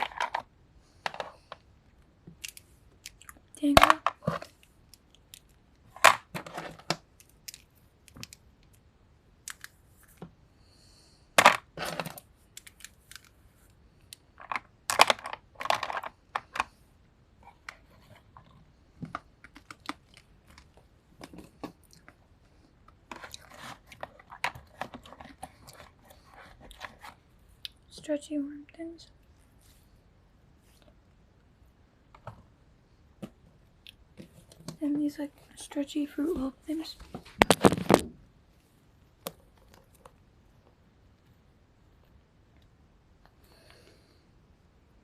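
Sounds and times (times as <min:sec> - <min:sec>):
plastic toys clicking and clattering: 0:00.0 - 0:01.6, 0:02.3 - 0:08.8, 0:14.1 - 0:16.8, 0:23.1 - 0:27.2.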